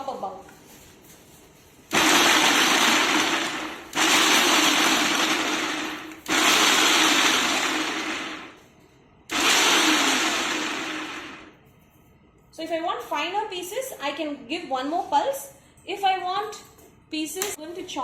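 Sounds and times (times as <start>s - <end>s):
mixer grinder chopping: 1.9s - 8.6s, 9.3s - 11.5s.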